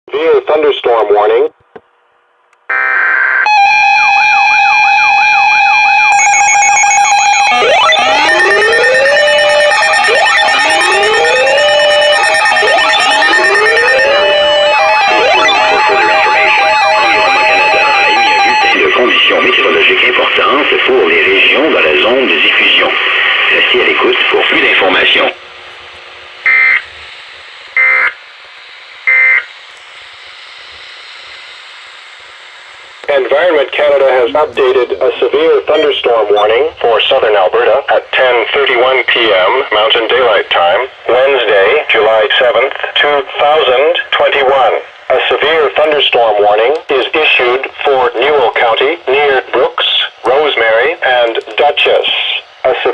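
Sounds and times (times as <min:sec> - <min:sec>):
layered electronic alarm: 0:02.7 - 0:20.1, 0:27.8 - 0:28.2
buzzing data burst: 0:06.0 - 0:20.0
radio hiss: 0:10.2 - 0:25.4, 0:33.0 - 0:52.9.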